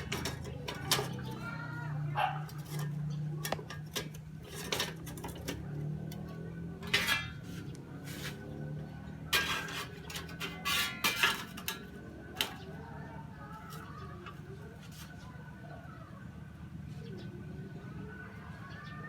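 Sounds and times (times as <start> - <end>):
metal parts clinking and scraping: 0.0 - 1.8, 2.4 - 8.4, 9.1 - 12.7.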